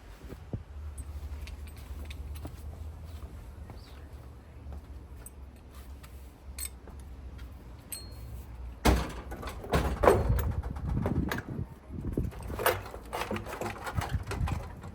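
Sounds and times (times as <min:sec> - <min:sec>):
machine parts knocking and rattling: 0:08.8 - 0:14.9.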